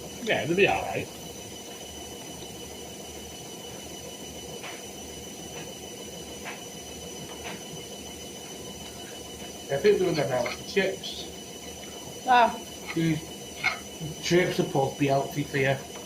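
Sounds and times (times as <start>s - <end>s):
high-pitched whine: 7.4s - 15.8s.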